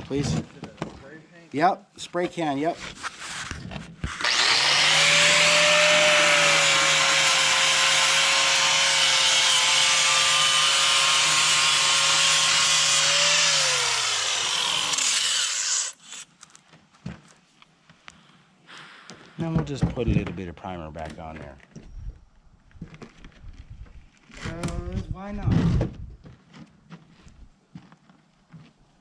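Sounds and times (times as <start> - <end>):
angle grinder grinding concrete: 4.1 - 16.2.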